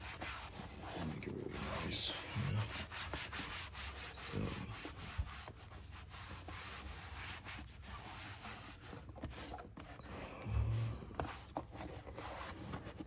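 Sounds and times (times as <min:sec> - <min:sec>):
cloth rubbing over a surface: 0:00.0 - 0:09.6.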